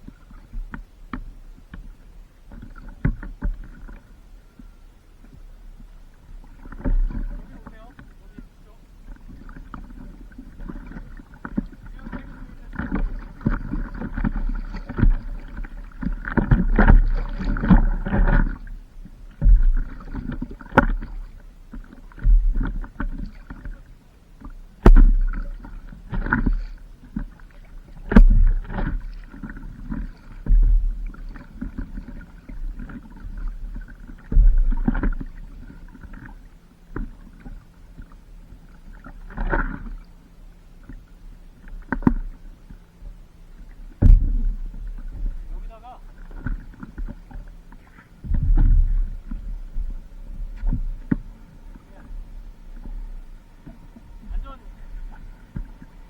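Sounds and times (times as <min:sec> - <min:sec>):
water splashing and sloshing: 0:00.0 - 0:56.0
wind rumble on microphone: 0:43.9 - 0:47.4, 0:48.2 - 0:56.0.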